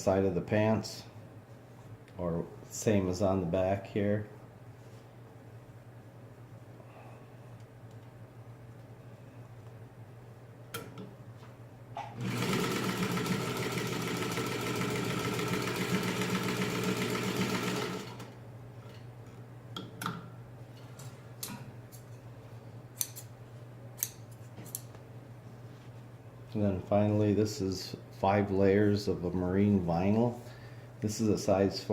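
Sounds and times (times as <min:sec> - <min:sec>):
sewing machine stitching: 0:12.2 - 0:18.3.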